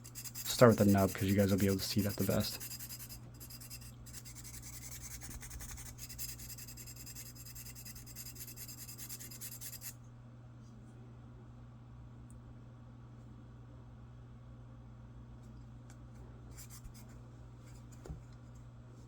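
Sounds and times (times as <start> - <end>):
sandpaper rasping on metal: 0.0 - 9.9.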